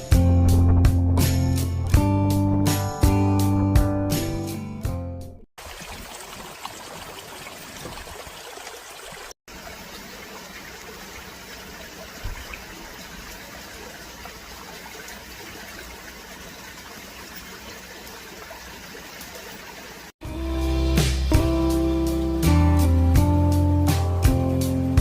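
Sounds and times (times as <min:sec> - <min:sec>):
water boiling in a cauldron: 0:05.6 - 0:20.2.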